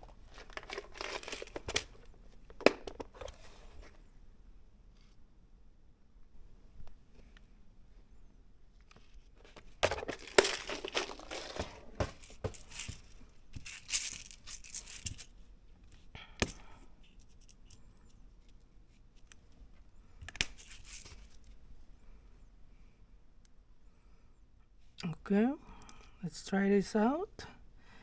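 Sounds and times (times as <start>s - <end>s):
small hard parts clicking: 0.0s - 3.3s, 9.4s - 15.3s
packaging crinkling and rustling: 0.0s - 3.9s, 9.4s - 15.3s, 20.3s - 21.4s.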